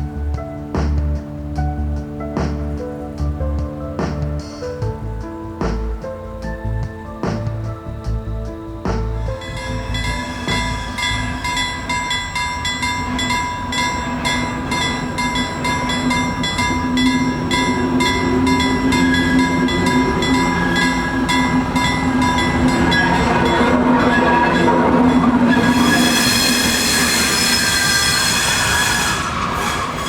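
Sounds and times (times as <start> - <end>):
diesel locomotive whine: 0.0 - 30.0
train wheels clicking on track: 9.0 - 30.0.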